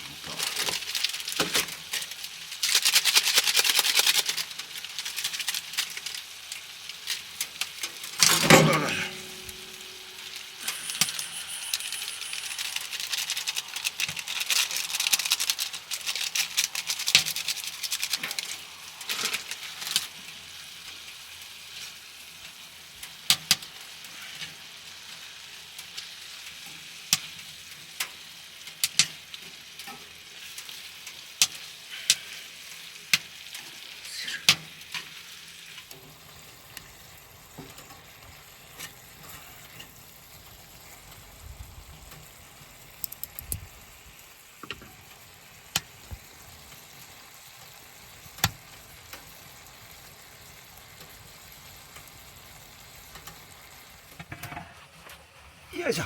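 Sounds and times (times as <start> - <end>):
food sizzling in a pan: 0.0 - 54.2
utensils clicking and clinking: 8.2 - 19.2, 43.0 - 43.6.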